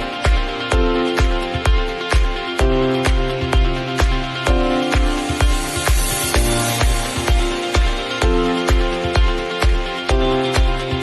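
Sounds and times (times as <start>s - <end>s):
electronic dance music: 0.0s - 11.0s
kick drum: 0.0s - 11.0s.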